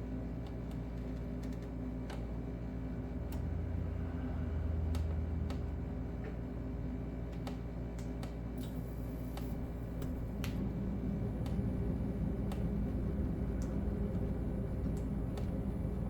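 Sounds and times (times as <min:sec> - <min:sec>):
ceiling fan motor hum: 0:00.0 - 0:16.0
fan ticking: 0:07.3 - 0:16.0.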